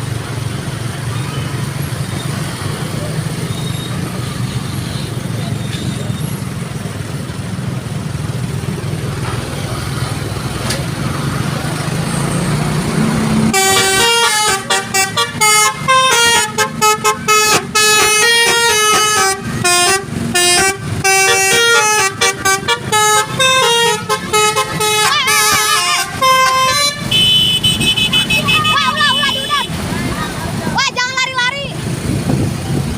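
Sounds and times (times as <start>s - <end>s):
multi-tone horn melody: 13.4s - 29.7s.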